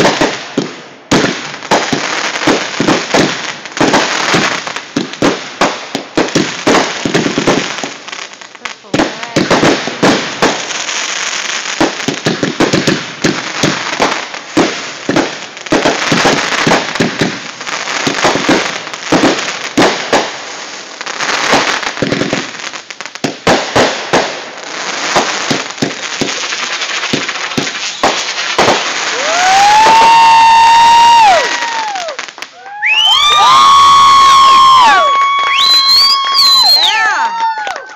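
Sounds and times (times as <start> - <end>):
fireworks bangs and crackling: 0.0 - 37.9
loud high-pitched shout: 29.1 - 37.9.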